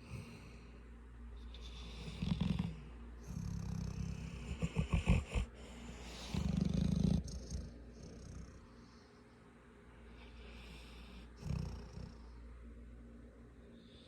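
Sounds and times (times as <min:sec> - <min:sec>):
pet snoring: 0:00.0 - 0:00.6, 0:01.5 - 0:09.0, 0:10.2 - 0:12.4.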